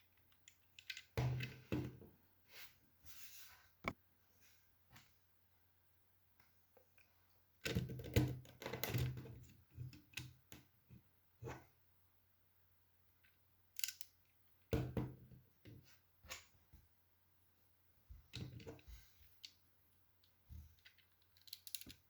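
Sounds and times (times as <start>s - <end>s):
plastic bricks clicking and clattering: 20.2s - 22.0s.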